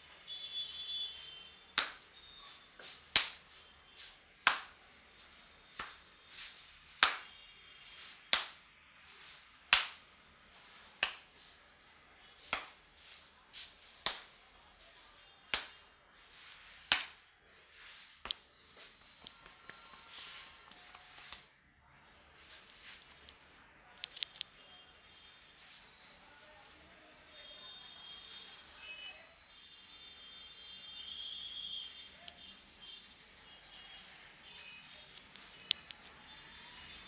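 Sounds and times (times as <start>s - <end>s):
hand claps of head massage: 1.8s - 2.1s, 2.8s - 4.8s, 5.7s - 8.6s, 9.2s - 10.1s, 10.9s - 11.5s, 12.4s - 14.4s, 15.5s - 17.2s.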